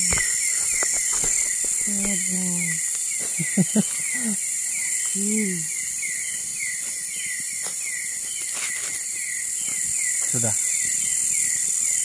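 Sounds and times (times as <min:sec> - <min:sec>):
short falling insect chirp: 0:00.0 - 0:05.6
insect chorus buzzing: 0:00.0 - 0:12.0.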